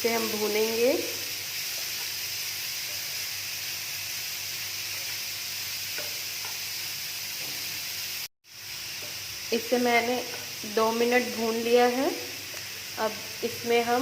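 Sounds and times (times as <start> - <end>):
food sizzling in oil: 0.0 - 14.0.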